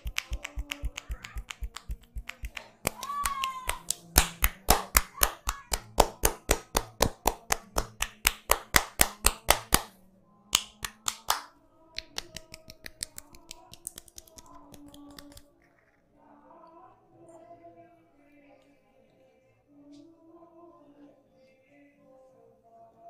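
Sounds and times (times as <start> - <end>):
soft quick hand taps: 0.0 - 8.4
hands slapping head: 0.0 - 9.9, 10.6 - 15.4
faint background music: 0.0 - 23.0.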